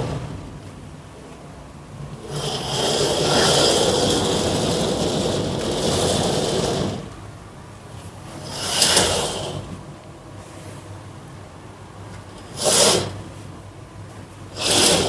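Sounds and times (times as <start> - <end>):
curtain runners scraping on track: 2.2 - 7.4, 8.3 - 9.9, 12.4 - 13.4, 14.5 - 15.0.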